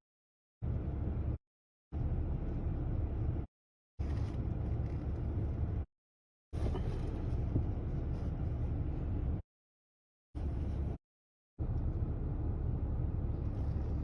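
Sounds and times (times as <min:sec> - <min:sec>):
car cabin road and engine noise: 0:00.6 - 0:01.4, 0:02.0 - 0:05.9, 0:06.6 - 0:09.4, 0:10.4 - 0:11.0, 0:11.6 - 0:14.0.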